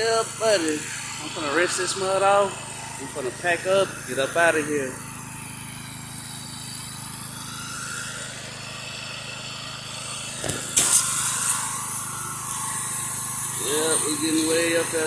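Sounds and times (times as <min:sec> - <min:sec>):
pressure washer engine running: 0:00.0 - 0:15.0
high-pressure spray hissing: 0:10.2 - 0:15.0
spray wand trigger click: 0:10.4 - 0:11.7.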